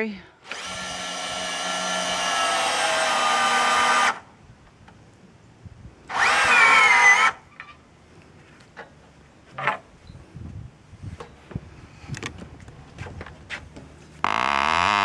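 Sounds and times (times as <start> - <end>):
cordless drill motor whining: 0.4 - 4.3, 6.1 - 7.4.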